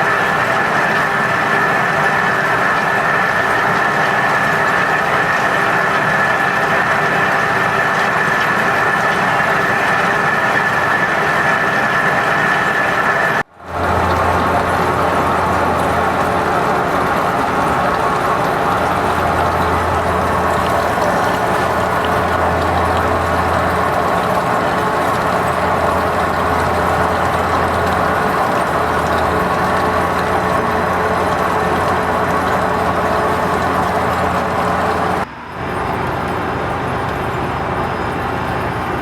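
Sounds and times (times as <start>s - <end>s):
metal lathe running: 0.0s - 39.0s
deeper hum: 13.4s - 39.0s.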